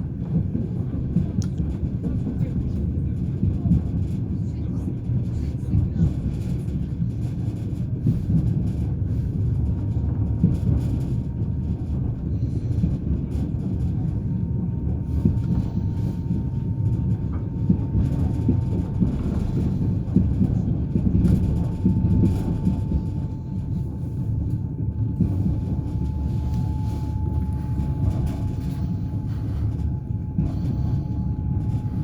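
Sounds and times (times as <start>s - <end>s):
train rumbling: 0.0s - 32.0s
faint steady whine: 21.4s - 32.0s.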